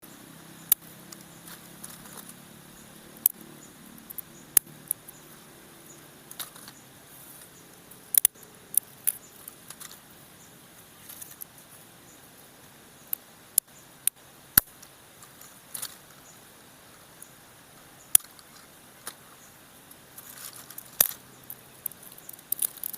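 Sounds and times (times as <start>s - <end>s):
dry twigs snapping and crackling: 0.6s - 5.4s, 6.0s - 6.8s, 7.4s - 10.1s, 11.0s - 11.5s, 13.1s - 16.2s, 18.1s - 19.4s, 20.1s - 22.9s.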